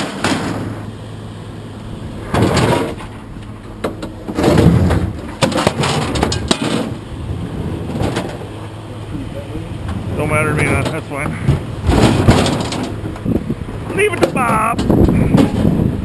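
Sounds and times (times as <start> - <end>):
knocks and clatter: 0.0 - 0.8, 2.2 - 7.0, 7.8 - 8.5, 9.8 - 15.9
low hum: 0.0 - 16.0.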